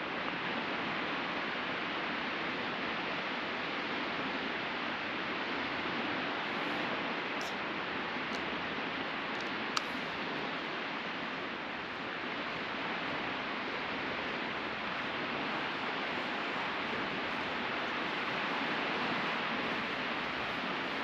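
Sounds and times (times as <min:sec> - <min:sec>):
sea surf on beach: 0:00.0 - 0:21.0
small sharp click: 0:07.4 - 0:07.6, 0:09.4 - 0:10.0.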